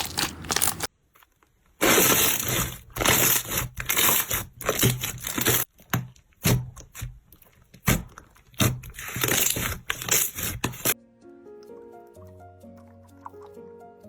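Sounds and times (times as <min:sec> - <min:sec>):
crunchy slime crackling: 0:00.0 - 0:00.9, 0:01.8 - 0:05.8, 0:06.4 - 0:11.0.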